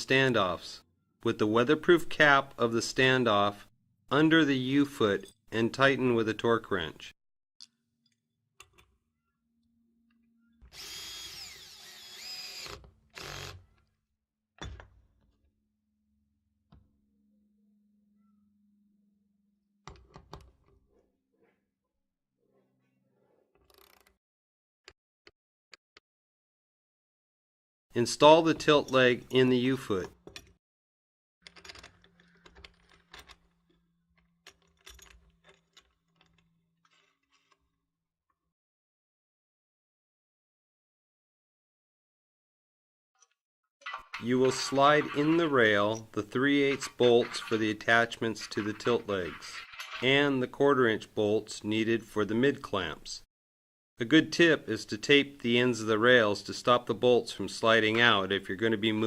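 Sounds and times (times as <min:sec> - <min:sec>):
power drill whining: 0:10.7 - 0:13.7
metallic clicks and clinks: 0:43.8 - 0:50.3.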